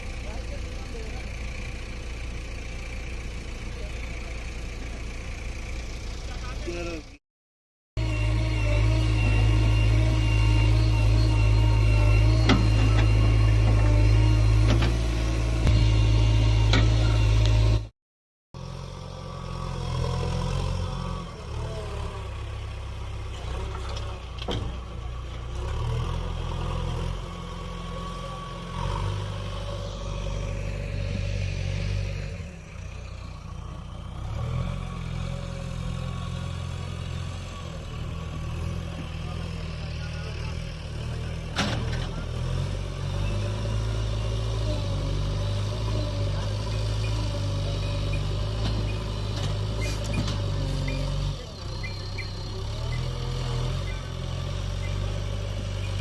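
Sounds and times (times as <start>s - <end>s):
diesel engine droning: 0.0s - 7.2s, 8.0s - 17.9s, 18.6s - 56.0s.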